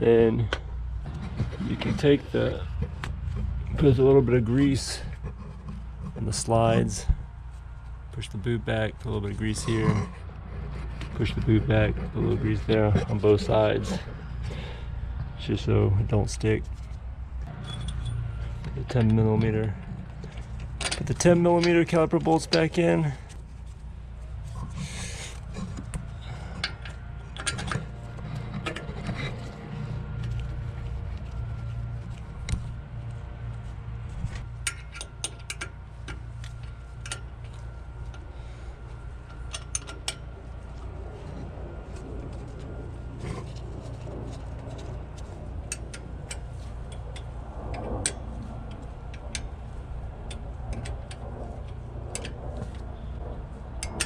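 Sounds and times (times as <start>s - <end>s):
low background hum: 0.0s - 54.0s
metal clicks of hand tools: 34.6s - 38.2s, 39.2s - 40.4s, 53.8s - 54.0s.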